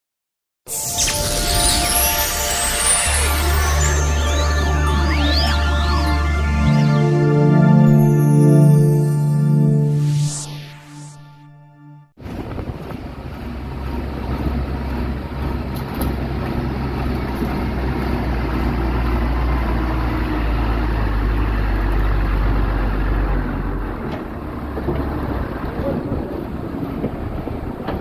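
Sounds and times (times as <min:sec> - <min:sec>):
intro music: 0:00.7 - 0:12.2
diesel engine rumbling: 0:12.2 - 0:28.0.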